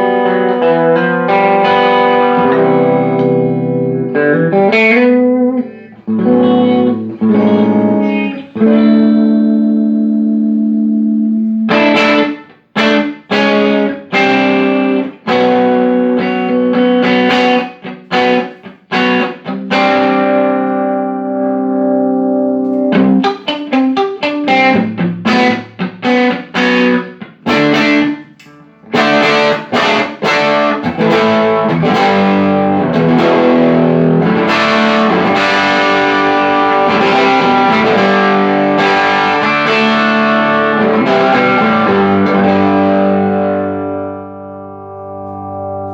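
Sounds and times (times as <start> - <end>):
overdriven electric guitar chords: 0.0 - 45.9.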